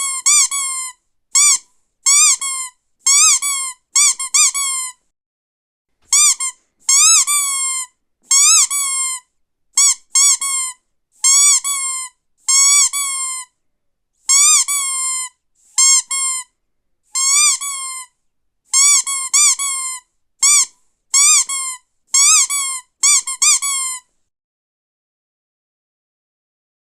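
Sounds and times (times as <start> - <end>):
squeaky dog toy squeaking: 0.0 - 5.0, 6.1 - 9.2, 9.8 - 13.5, 14.2 - 16.5, 17.1 - 24.1.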